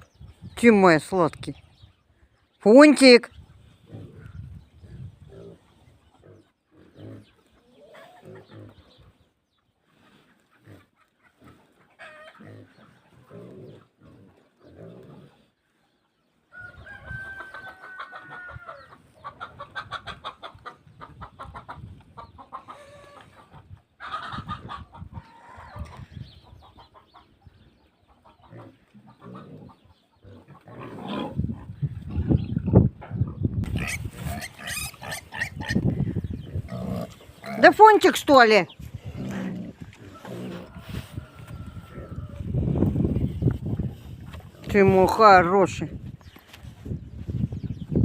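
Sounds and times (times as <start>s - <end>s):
low pig grunts: 3.8s - 9.0s, 10.5s - 15.6s, 28.5s - 37.6s, 39.0s - 40.7s
chickens clucking: 3.8s - 48.0s
drawn-out hen call: 6.4s - 9.2s, 10.4s - 14.0s, 16.5s - 45.9s.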